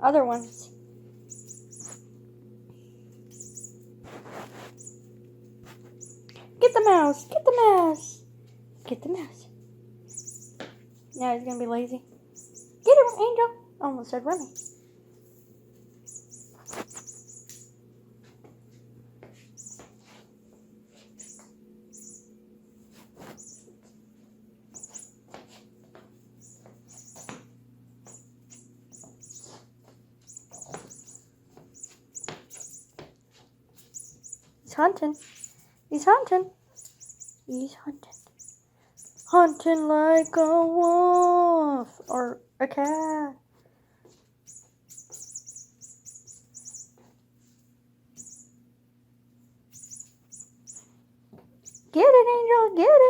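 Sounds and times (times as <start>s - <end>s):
low steady hum: 0.0s - 53.0s
toy mouse squeaking: 0.1s - 2.2s, 3.2s - 5.1s, 5.7s - 8.2s, 10.0s - 15.2s, 16.0s - 17.8s, 19.5s - 20.1s, 21.0s - 22.3s, 23.2s - 23.8s, 24.7s - 25.6s, 26.2s - 33.0s, 33.7s - 43.4s, 44.4s - 47.1s, 48.1s - 48.6s, 49.7s - 51.0s, 51.6s - 52.8s.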